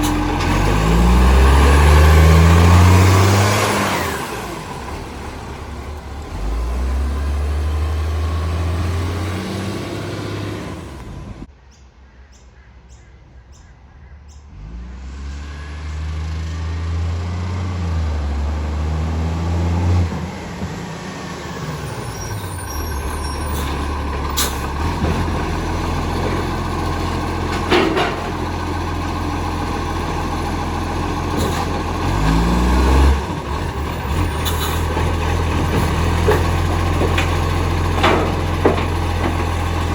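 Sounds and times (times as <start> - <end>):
garbage truck engine running: 0.0 - 11.5, 15.9 - 39.9.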